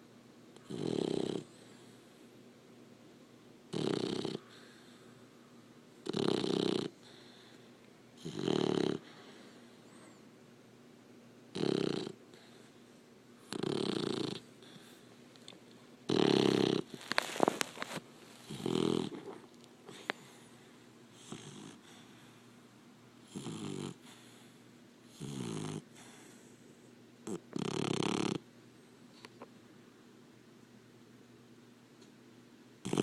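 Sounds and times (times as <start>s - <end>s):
puppy snoring: 0.6s - 2.2s, 3.7s - 5.1s, 6.0s - 10.2s, 11.5s - 15.1s, 16.1s - 22.4s, 23.2s - 28.5s, 32.8s - 33.0s.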